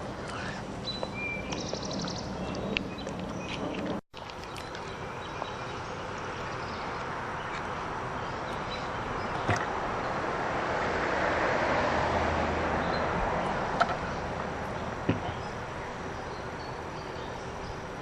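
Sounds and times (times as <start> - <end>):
vehicle passing by: 7.1 - 16.2.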